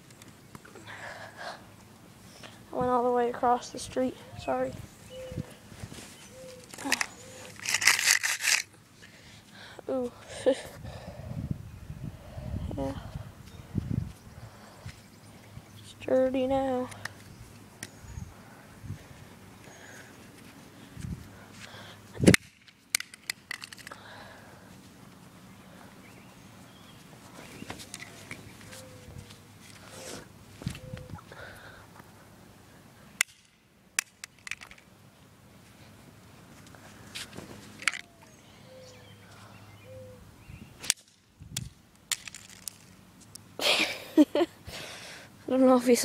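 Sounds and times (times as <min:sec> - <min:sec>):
walkie-talkie cracking on ground: 0:06.5 - 0:08.7
pieces clicking and clattering: 0:06.7 - 0:08.7, 0:40.9 - 0:43.0
sharp crack: 0:22.2 - 0:24.0, 0:33.2 - 0:34.8, 0:40.8 - 0:43.0.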